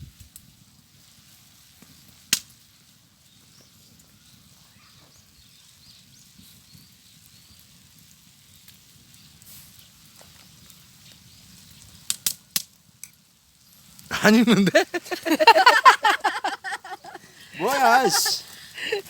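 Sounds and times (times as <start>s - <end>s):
fire crackling pops: 1.6s - 2.8s, 7.3s - 14.4s
wood fire burning: 5.5s - 14.2s, 17.0s - 19.0s
faint outdoor hush: 14.1s - 19.0s.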